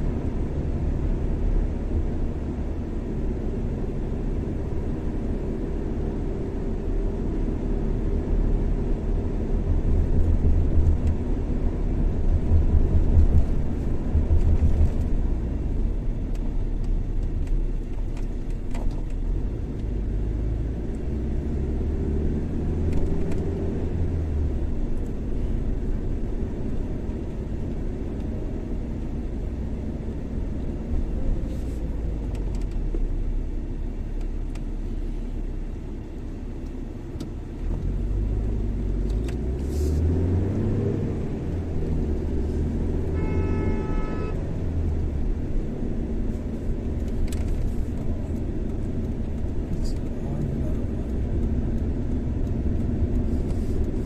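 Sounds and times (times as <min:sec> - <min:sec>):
car road and engine rumble: 0:00.0 - 0:54.0
short pitched tone: 0:43.1 - 0:44.4.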